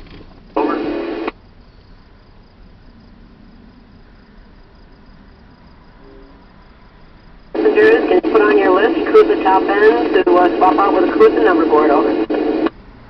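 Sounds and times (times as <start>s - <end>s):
crickets chirping: 1.3s - 7.6s.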